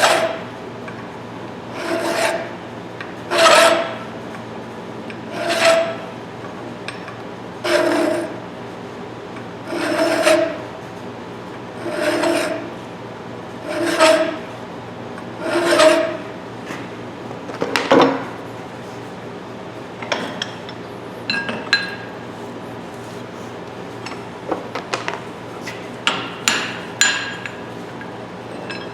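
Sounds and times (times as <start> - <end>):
hand file rasping on metal: 13.6 - 14.5, 15.4 - 17.0, 25.6 - 27.4.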